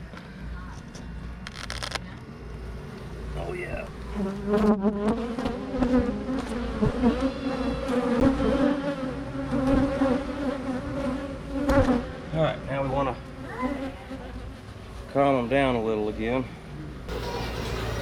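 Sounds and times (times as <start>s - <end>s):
swarm of bees buzzing: 2.6s - 14.6s
single bees flying past: 3.9s - 12.6s.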